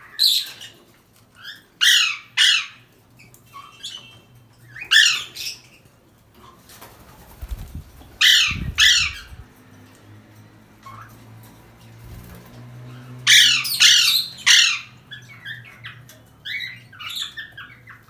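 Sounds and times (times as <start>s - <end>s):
parrot squawking: 1.4s - 2.9s, 4.8s - 5.7s, 8.1s - 9.4s, 13.0s - 18.0s
low flutter: 7.2s - 9.5s.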